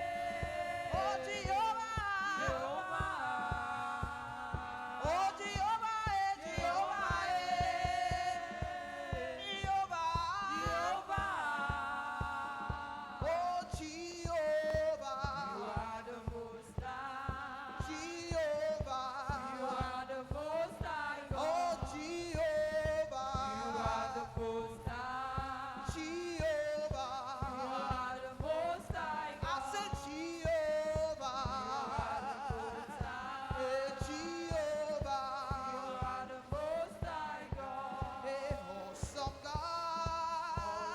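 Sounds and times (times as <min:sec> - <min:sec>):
congregation singing gospel chorus: 0:00.0 - 0:40.9
steady drum beat: 0:00.0 - 0:40.9.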